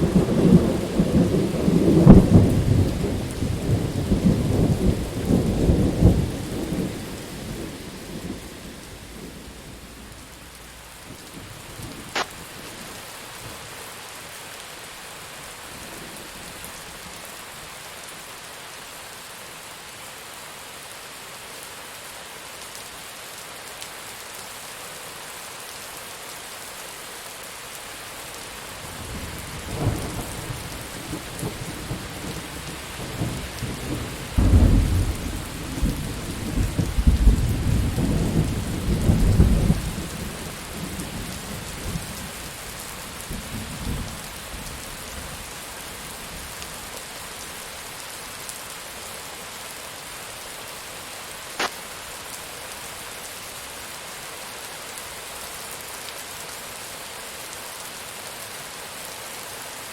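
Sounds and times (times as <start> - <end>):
rolling thunder: 0.0 - 12.3
steady rain falling: 0.0 - 59.9.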